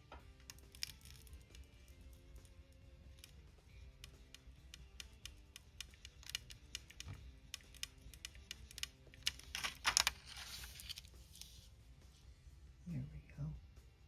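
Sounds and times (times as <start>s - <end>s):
faint background music: 0.0s - 14.0s
scraping rustle: 9.4s - 11.7s.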